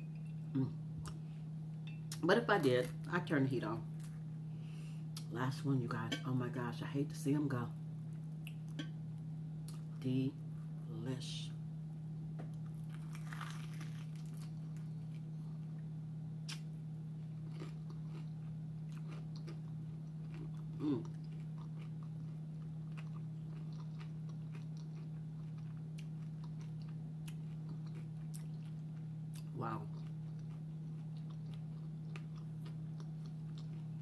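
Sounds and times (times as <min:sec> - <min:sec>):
steady low hum: 0:00.0 - 0:34.0
chewing crispy food: 0:12.6 - 0:15.8, 0:16.5 - 0:34.0.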